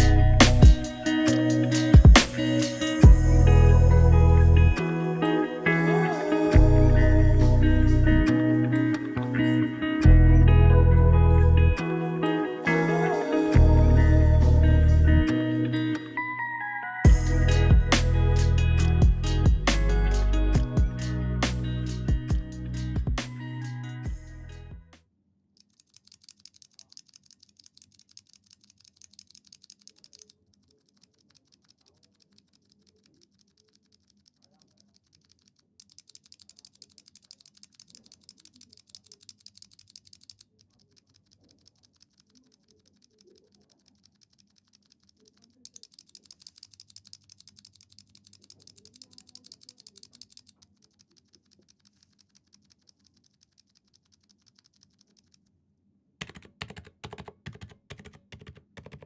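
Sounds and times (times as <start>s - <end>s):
soft muffled keyboard typing: 25.6s - 55.6s, 56.2s - 59.0s.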